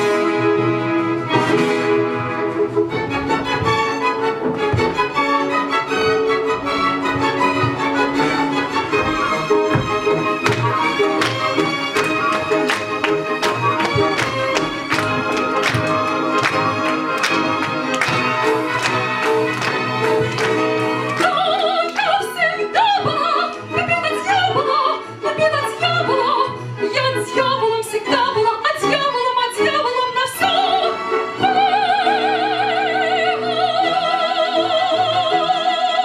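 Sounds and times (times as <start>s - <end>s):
instrumental accompaniment: 0.0s - 32.3s
woman singing operetta with vibrato: 21.2s - 36.0s.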